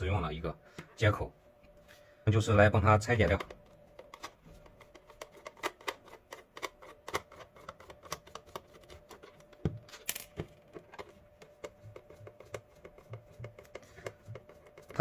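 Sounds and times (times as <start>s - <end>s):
screwdriver clicking on plastic: 3.2s - 15.0s.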